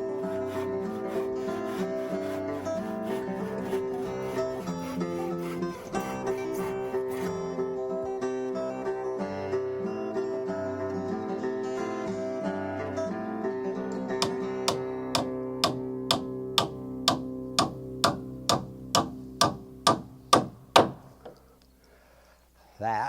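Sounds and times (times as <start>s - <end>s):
acoustic guitar music: 0.0s - 20.7s
hammer driving nail into wood: 0.2s - 7.3s, 14.2s - 21.4s.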